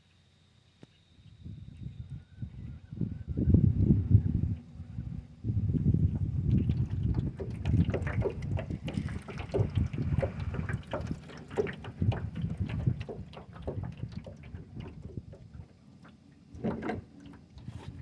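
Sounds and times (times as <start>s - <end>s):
water sloshing against boat: 5.6s - 18.0s.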